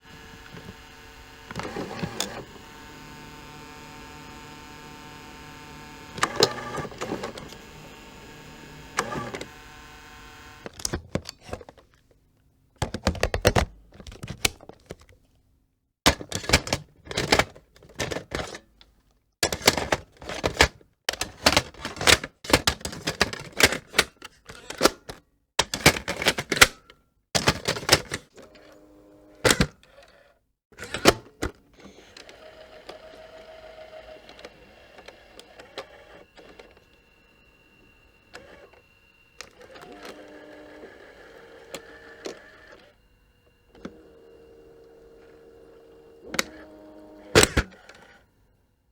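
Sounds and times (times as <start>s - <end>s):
cassette motor hum: 0.0s - 11.8s, 31.9s - 48.6s
mechanical clunks: 0.1s - 11.6s
sharp plastic clicks and clatters: 12.8s - 15.2s, 16.1s - 18.6s, 19.4s - 28.3s.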